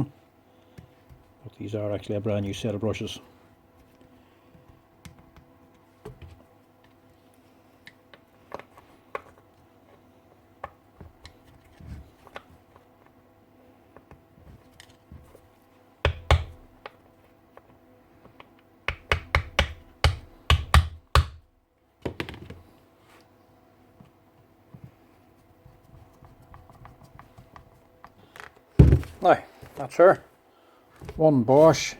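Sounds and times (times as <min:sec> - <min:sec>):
tools clicking and tapping: 0:17.6 - 0:21.4
knocks on workbench: 0:28.8 - 0:29.1.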